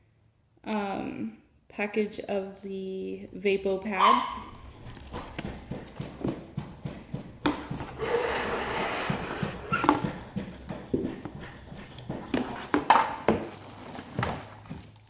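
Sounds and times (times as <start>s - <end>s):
packaging rustling: 12.2s - 15.0s.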